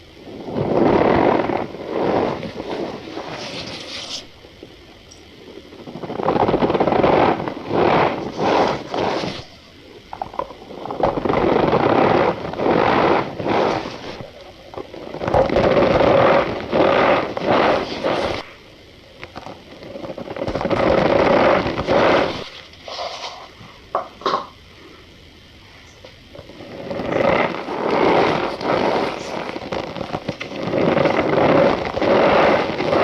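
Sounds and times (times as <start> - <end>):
powder squeaking and crunching: 26.5 - 33.0.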